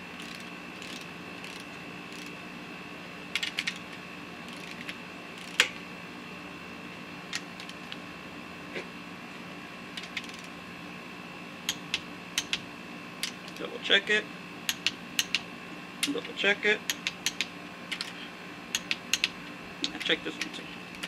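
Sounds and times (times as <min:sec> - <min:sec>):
steady background hum: 0:00.0 - 0:21.0
metallic tool clicks: 0:03.3 - 0:05.8, 0:11.7 - 0:12.6, 0:14.7 - 0:16.2, 0:16.9 - 0:18.1, 0:18.7 - 0:21.0.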